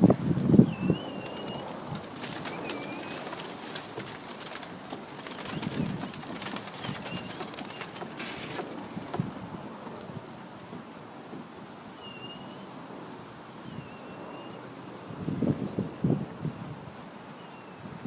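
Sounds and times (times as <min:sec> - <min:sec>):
pigeon wings clattering: 0:00.0 - 0:10.4.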